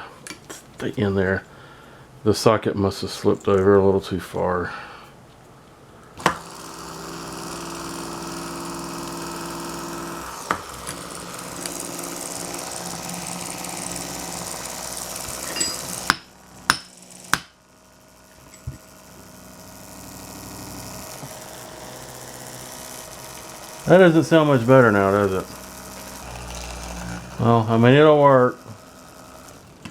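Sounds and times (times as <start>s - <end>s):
electric pump motor running roughly: 6.2s - 29.9s.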